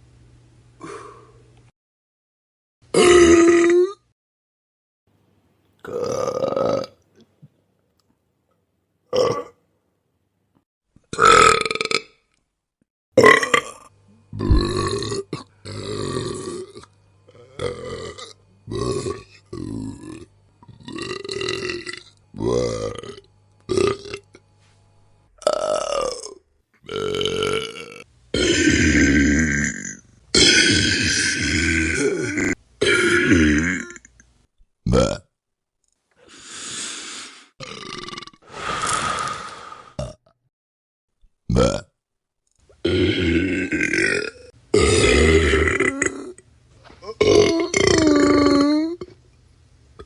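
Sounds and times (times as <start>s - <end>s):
human burps: 2.9s - 4.1s, 5.8s - 7.0s, 9.1s - 9.6s, 11.1s - 12.2s, 13.2s - 24.5s, 25.4s - 34.2s, 34.8s - 35.3s, 37.6s - 38.4s, 40.0s - 40.4s, 41.5s - 41.9s, 42.8s - 46.4s, 47.0s - 49.2s.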